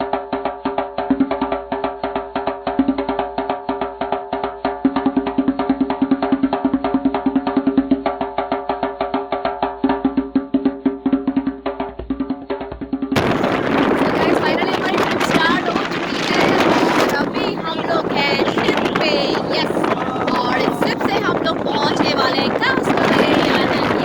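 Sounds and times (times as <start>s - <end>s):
fast percussive beat: 0.0s - 24.0s
held low tones: 13.2s - 24.0s.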